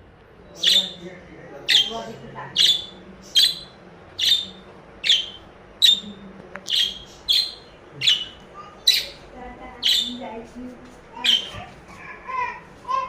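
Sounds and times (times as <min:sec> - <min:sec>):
budgerigar chirping: 0:00.6 - 0:01.0, 0:01.7 - 0:06.1, 0:06.7 - 0:09.2, 0:09.8 - 0:10.2, 0:11.2 - 0:11.6.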